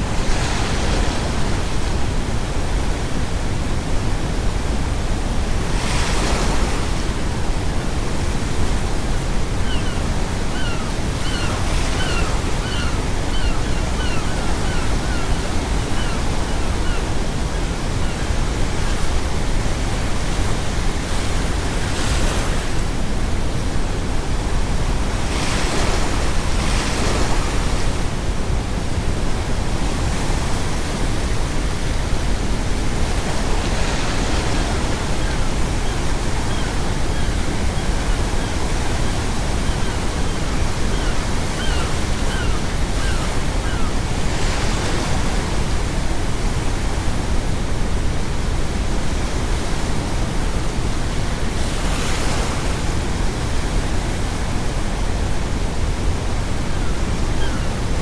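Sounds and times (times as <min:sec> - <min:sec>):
ocean waves crashing on shore: 0:00.0 - 0:58.0
seagull calling: 0:09.6 - 0:17.1, 0:33.8 - 0:44.0, 0:56.7 - 0:57.8.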